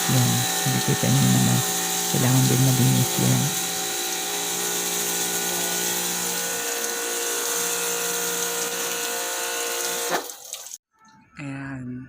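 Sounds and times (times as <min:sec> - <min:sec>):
water spray hissing: 0:00.0 - 0:09.0
pressure washer motor whine: 0:00.0 - 0:10.2.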